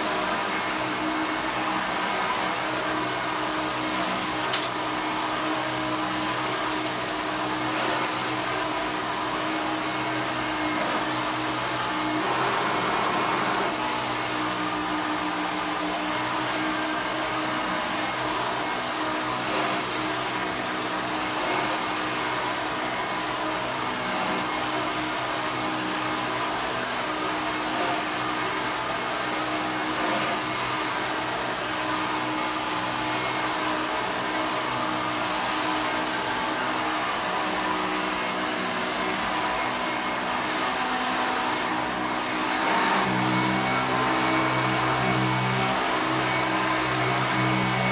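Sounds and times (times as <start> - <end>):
upright vacuum cleaner running: 0.0 - 47.9.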